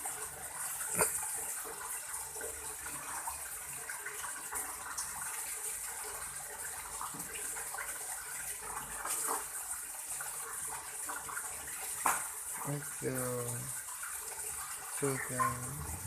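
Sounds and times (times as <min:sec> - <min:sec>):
running water splashing: 0:00.0 - 0:16.0
small splashes and knocks: 0:11.0 - 0:12.8.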